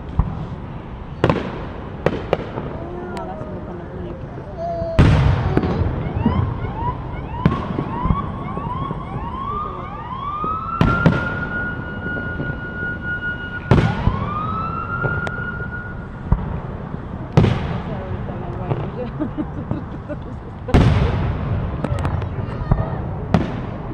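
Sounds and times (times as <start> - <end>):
fireworks bangs: 0.0 - 23.9.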